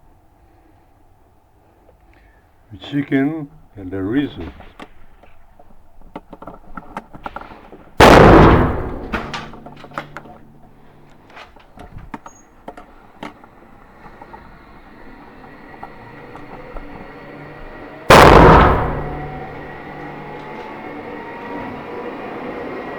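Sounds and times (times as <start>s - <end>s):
rifle shots echoing: 8.0s - 11.0s, 18.1s - 19.9s.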